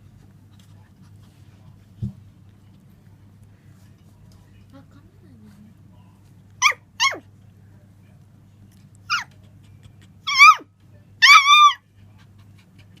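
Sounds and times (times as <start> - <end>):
dog whining: 10.2 - 11.8.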